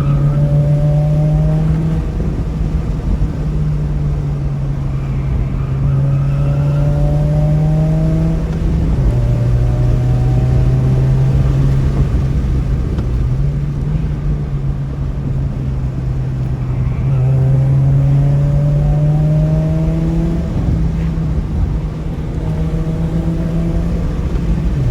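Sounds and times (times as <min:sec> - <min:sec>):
car engine rumbling under load: 0:00.0 - 0:24.9
wind and road noise: 0:00.0 - 0:24.9.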